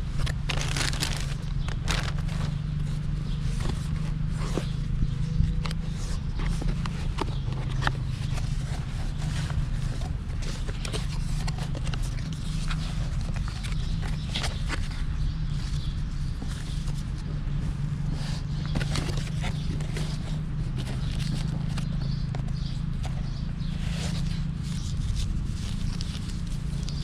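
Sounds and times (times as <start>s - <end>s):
packaging being handled: 0.0s - 2.9s
steady low hum: 0.0s - 27.0s.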